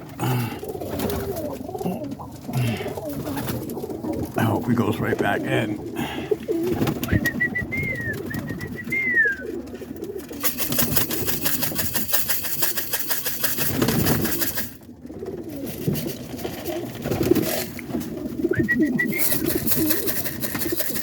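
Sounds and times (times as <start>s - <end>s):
pigeons cooing: 0.0s - 21.0s
thin whistling note: 18.6s - 20.1s.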